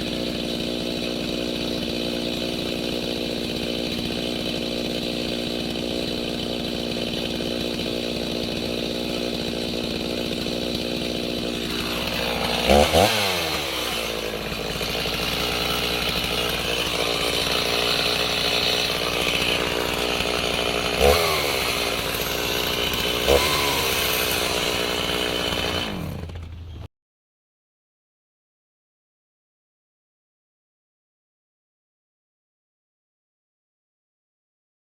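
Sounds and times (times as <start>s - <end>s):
chainsaw ripping a log: 0.0s - 26.8s.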